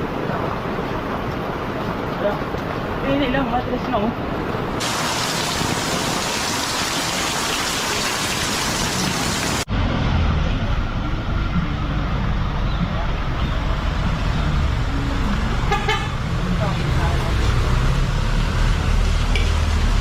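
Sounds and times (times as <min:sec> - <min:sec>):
heavy rain hissing: 0:04.8 - 0:09.7.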